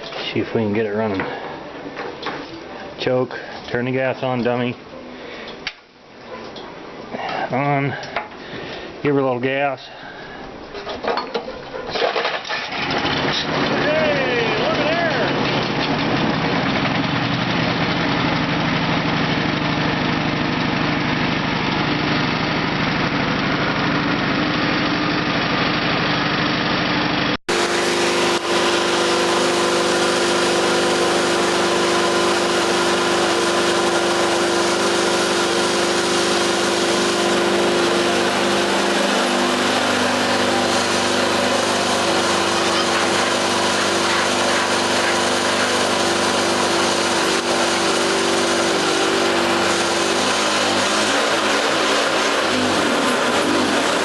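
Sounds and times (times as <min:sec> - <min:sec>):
small gas engine running: 0:12.0 - 0:54.0.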